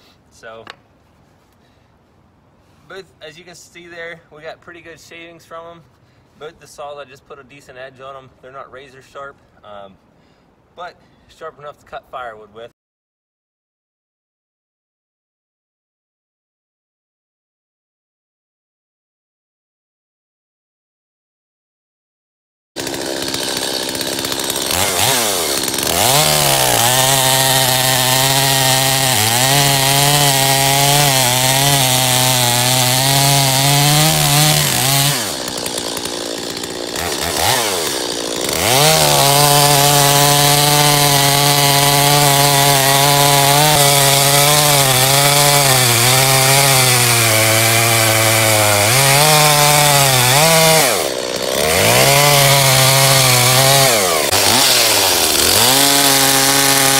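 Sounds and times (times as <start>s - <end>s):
chainsaw cutting wood: 22.8s - 56.9s.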